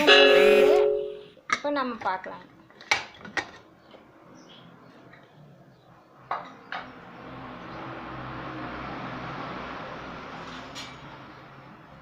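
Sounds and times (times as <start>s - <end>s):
passing vehicle rumble: 4.0s - 12.0s.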